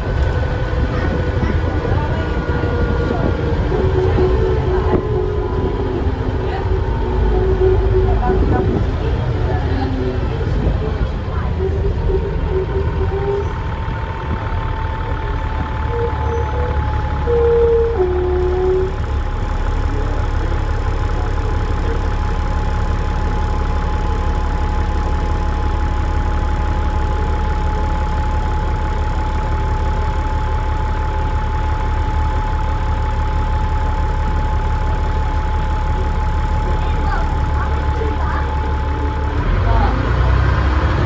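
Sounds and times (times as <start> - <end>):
bus diesel engine rumbling: 0.0 - 41.0
two-note descending tone: 0.8 - 10.5, 11.2 - 19.0
high turbo whistle: 15.1 - 19.0.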